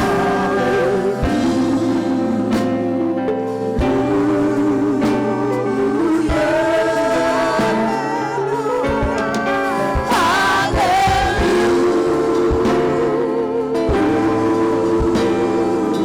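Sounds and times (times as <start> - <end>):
low drum beats: 0.0 - 3.2, 8.8 - 16.0
sustained instrumental notes: 0.0 - 16.0
voices singing gospel: 0.0 - 16.0.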